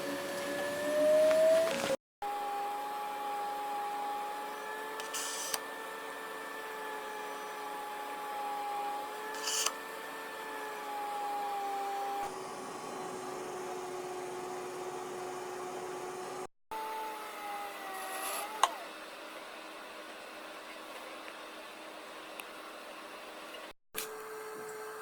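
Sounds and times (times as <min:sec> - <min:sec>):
electric motor whining: 0:00.0 - 0:14.0, 0:16.8 - 0:18.9.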